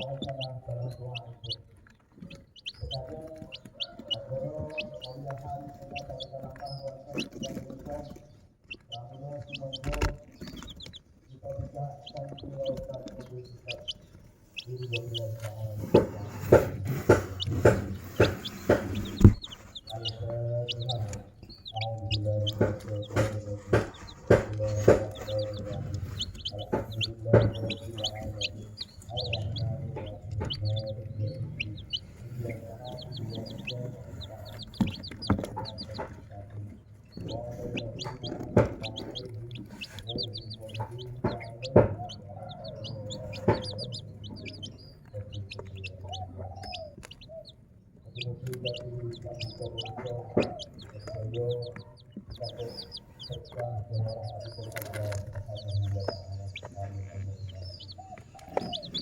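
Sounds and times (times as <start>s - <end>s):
chickens clucking: 0.0s - 59.0s
chicks peeping: 0.0s - 59.0s
sharp taps: 12.1s - 36.3s, 37.1s - 47.4s, 48.1s - 59.0s.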